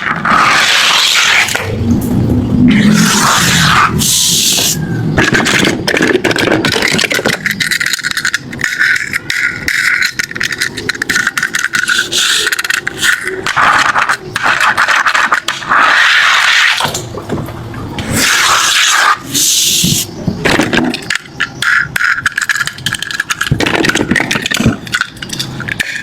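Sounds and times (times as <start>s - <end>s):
toy cars rattling and clicking: 2.9s - 16.3s, 20.4s - 26.0s
scraping hiss: 18.1s - 20.2s.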